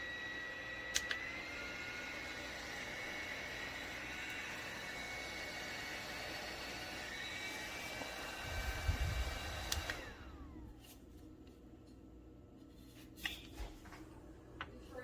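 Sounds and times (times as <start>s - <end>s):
handheld fan motor whine: 0.0s - 11.5s.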